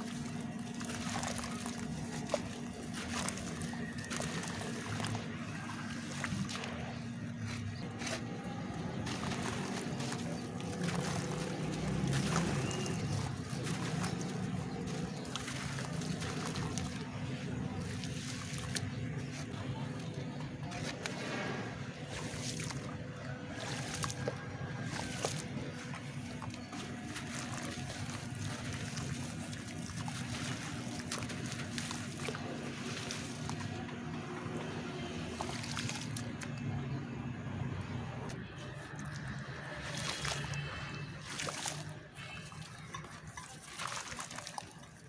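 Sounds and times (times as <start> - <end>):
low rumble of moving water: 0.0 - 45.0.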